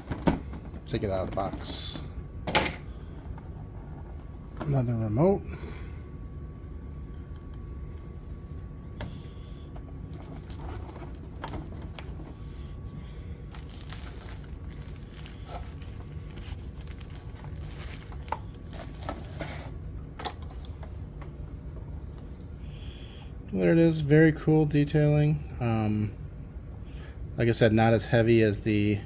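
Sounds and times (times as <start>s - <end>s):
steady low hum: 0.0s - 29.0s
packaging rustling and crinkling: 10.1s - 12.4s, 13.5s - 19.7s.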